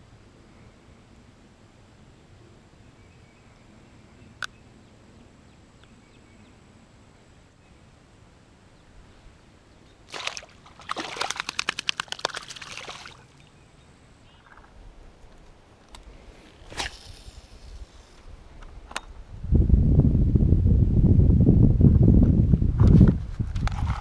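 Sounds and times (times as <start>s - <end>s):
rapid splashing in water: 10.1s - 13.4s.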